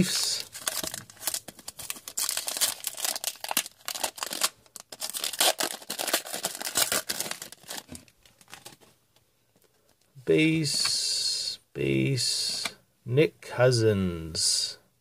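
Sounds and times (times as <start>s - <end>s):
card packs crinkling and rustling: 0.0s - 9.0s.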